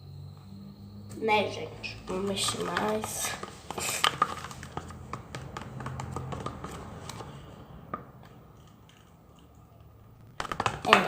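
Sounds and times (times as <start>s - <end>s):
slime being stirred: 1.8s - 7.6s
utensil tapping container sides: 2.1s - 7.3s.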